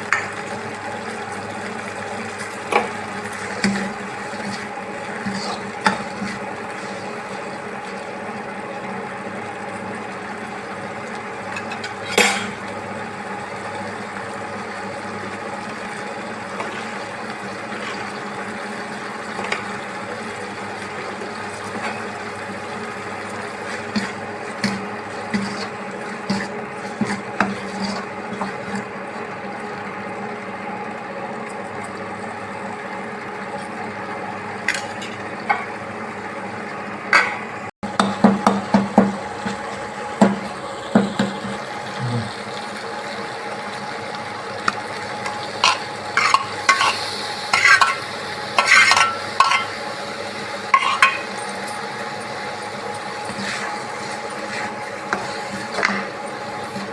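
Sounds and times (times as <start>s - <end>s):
steady cooking hiss: 0.0s - 56.9s
utensil knocking on cooking pot: 37.9s - 39.6s.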